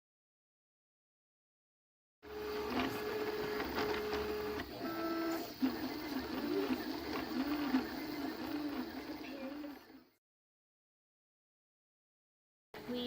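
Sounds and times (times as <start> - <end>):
stepper motors whining: 2.3 - 10.0.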